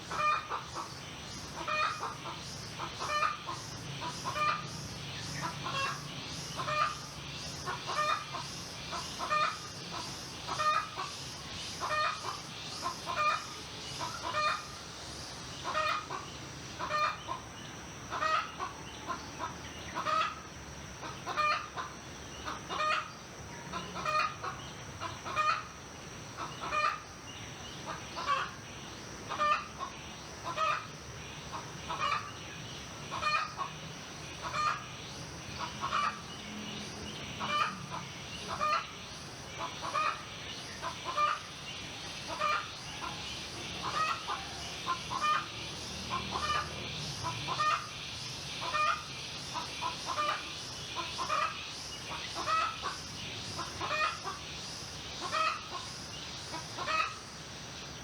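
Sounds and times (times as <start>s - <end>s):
chicken clucking: 37.4s - 37.8s, 42.3s - 45.5s, 46.1s - 46.6s, 47.2s - 47.8s, 48.6s - 49.0s, 51.0s - 53.0s, 53.6s - 54.4s, 55.2s - 55.8s.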